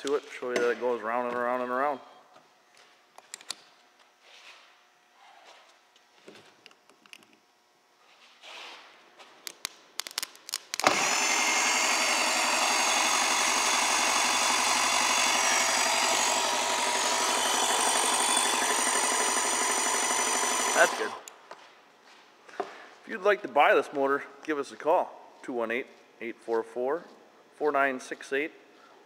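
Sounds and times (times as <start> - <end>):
electric starter whirring: 10.7 - 21.4.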